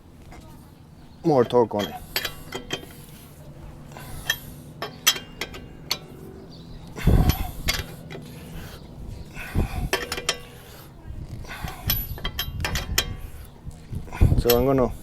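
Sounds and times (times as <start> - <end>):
wrench clicking on lug nuts: 4.2 - 6.1.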